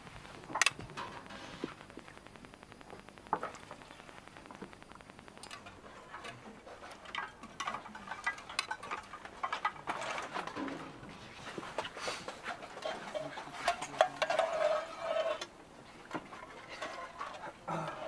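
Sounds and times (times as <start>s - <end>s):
fast even ticking: 1.7s - 5.5s
dishes and utensils clattering: 5.5s - 15.4s.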